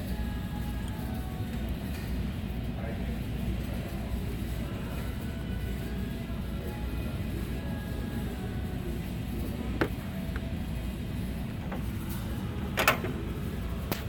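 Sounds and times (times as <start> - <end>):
low steady hum: 0.0 - 14.0
sharp clicks and knocks: 12.8 - 13.2.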